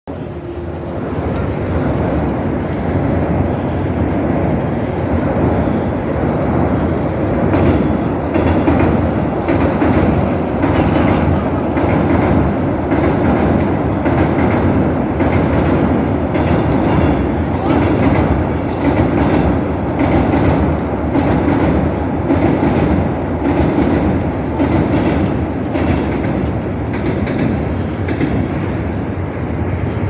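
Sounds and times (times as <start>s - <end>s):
train wheels rumbling on rails: 0.1s - 30.0s
wheels clacking over rail joints: 6.7s - 29.9s.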